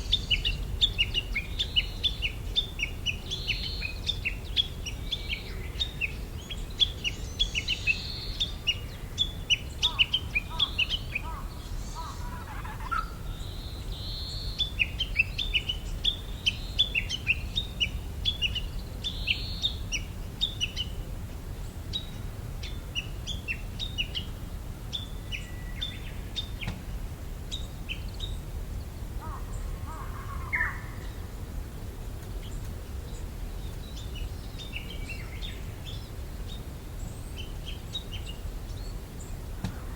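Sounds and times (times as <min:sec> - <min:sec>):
songbird chirping: 0:00.0 - 0:21.0, 0:21.6 - 0:26.8, 0:27.5 - 0:39.9
low warbled bird phrases: 0:09.8 - 0:13.5.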